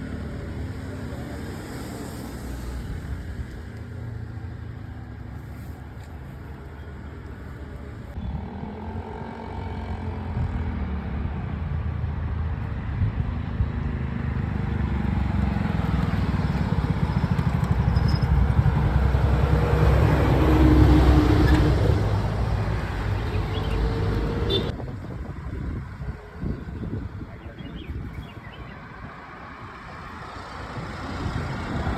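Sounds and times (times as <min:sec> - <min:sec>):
vehicle engine running: 0:14.1 - 0:24.7.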